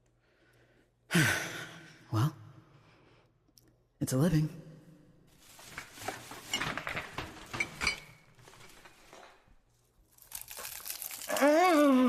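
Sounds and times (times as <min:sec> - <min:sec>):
glass and metal clinking: 0:06.4 - 0:08.6.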